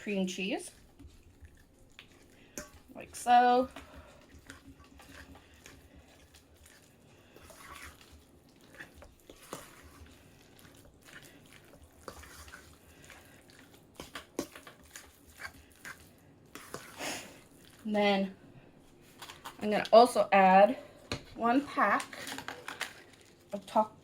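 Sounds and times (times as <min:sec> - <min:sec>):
wet squishing and scraping: 0:00.0 - 0:20.0, 0:21.1 - 0:23.8.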